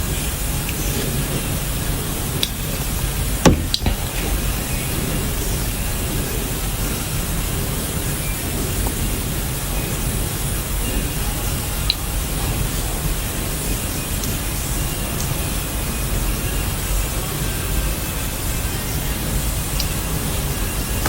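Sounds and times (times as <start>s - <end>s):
steady hiss: 0.0s - 21.0s
sharp clicks: 3.5s - 4.5s.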